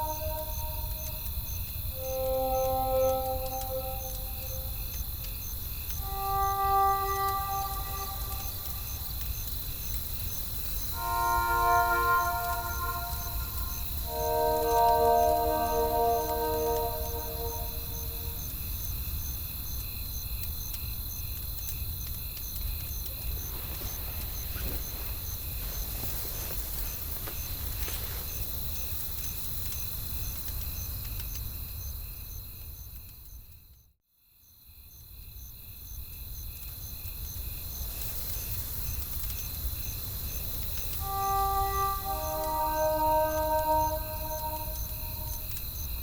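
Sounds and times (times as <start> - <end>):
crickets chirping: 0.0 - 18.6, 39.5 - 46.0.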